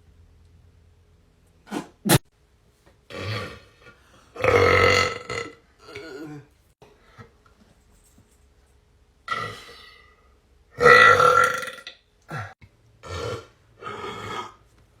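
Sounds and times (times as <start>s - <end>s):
person burping: 3.1s - 3.8s, 4.4s - 6.5s, 9.3s - 10.0s, 10.8s - 14.6s.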